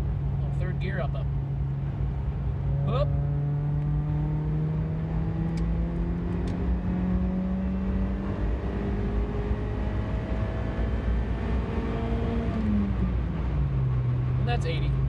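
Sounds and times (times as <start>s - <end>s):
car engine revving hard: 2.6s - 13.5s.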